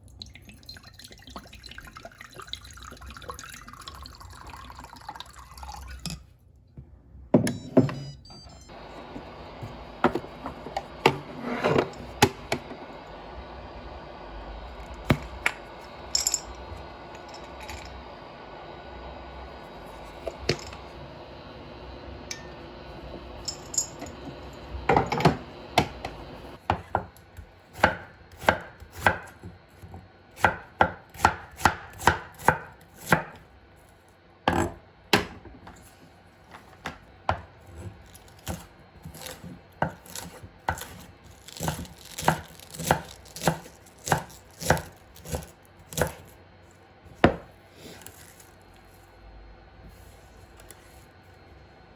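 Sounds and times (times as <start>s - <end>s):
knife chopping on cutting board: 27.7s - 29.5s, 30.4s - 33.4s, 37.3s - 46.3s.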